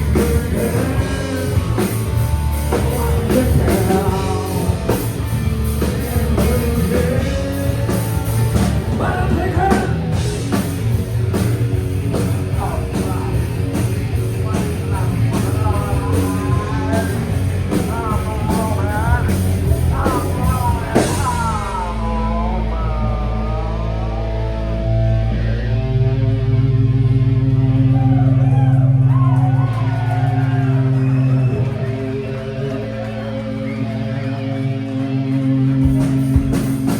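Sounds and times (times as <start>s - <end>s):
person singing: 0.0s - 10.3s, 12.1s - 25.0s
rock band playing live: 0.0s - 36.9s.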